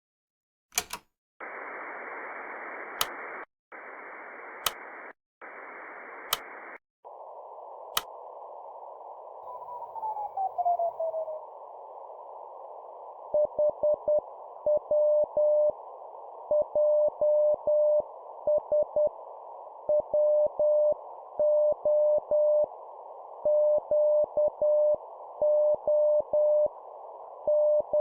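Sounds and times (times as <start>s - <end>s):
sharp clicks: 0.7s - 1.1s, 2.9s - 3.4s, 4.6s - 5.1s, 6.2s - 6.8s
radio static hiss: 1.4s - 28.0s.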